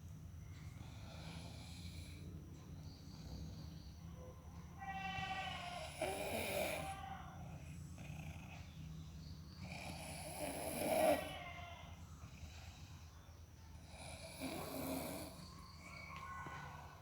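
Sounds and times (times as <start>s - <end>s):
person snoring: 13.8s - 15.5s.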